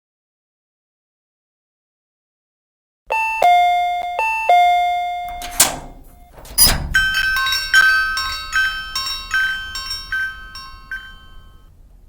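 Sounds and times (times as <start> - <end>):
small bell struck: 3.1 - 11.7
two-tone doorbell chime: 3.1 - 11.7.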